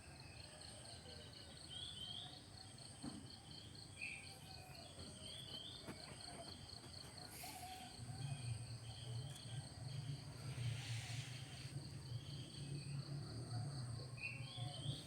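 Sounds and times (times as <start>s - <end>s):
crickets trilling: 3.7s - 15.0s.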